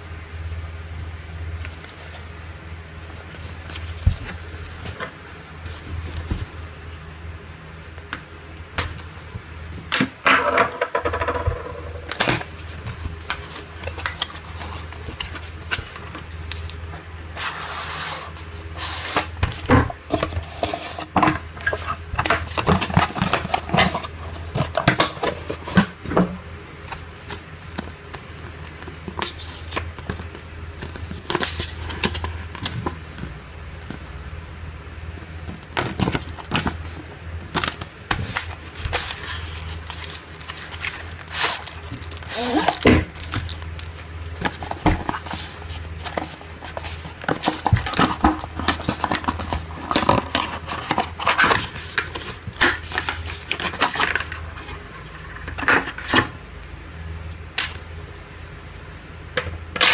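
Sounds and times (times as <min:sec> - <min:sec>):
packaging crinkling and scraping: 0:11.3 - 0:26.0, 0:26.7 - 0:33.4, 0:35.5 - 0:56.4.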